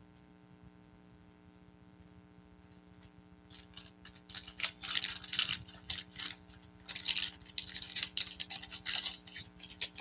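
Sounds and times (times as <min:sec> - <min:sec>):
wrapper crinkling and tearing: 0:03.5 - 0:10.0.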